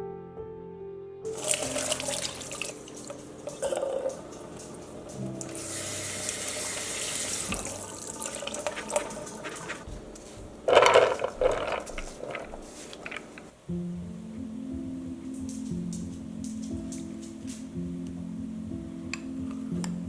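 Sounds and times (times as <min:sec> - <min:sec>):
soft background music: 0:00.0 - 0:11.7, 0:13.5 - 0:20.0
tap water running into sink: 0:01.3 - 0:09.9.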